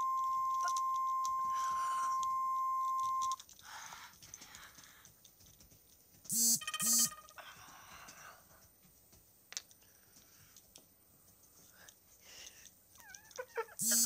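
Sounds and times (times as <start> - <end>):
steady single-pitch alert tone: 0.0 - 3.4, 6.3 - 7.3, 13.8 - 14.0.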